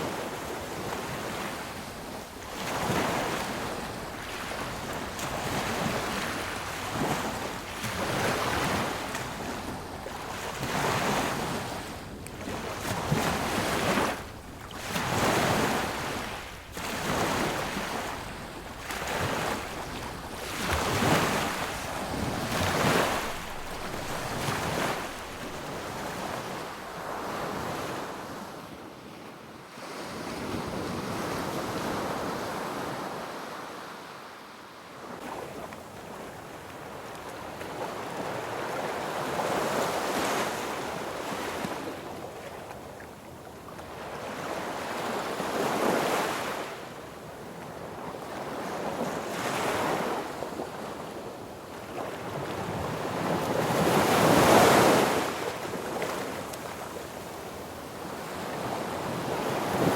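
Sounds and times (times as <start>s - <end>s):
sea waves breaking on beach: 0.0s - 28.6s, 43.8s - 59.9s.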